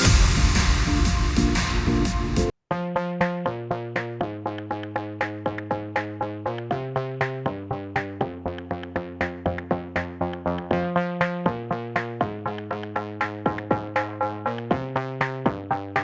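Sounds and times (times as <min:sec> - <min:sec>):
drum-machine beat: 0:00.0 - 0:02.5, 0:03.2 - 0:16.0
synthesizer chords: 0:00.0 - 0:16.0.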